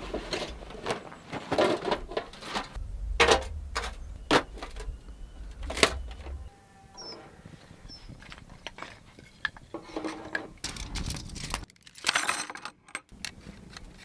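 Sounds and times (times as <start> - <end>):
objects clicking and knocking: 0.0 - 6.5, 8.2 - 14.0
low rumble: 1.8 - 6.6.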